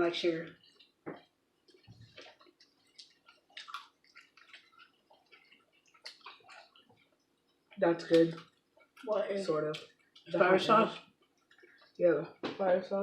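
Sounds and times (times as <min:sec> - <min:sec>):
chewing and mouth clicks: 0:00.2 - 0:12.0.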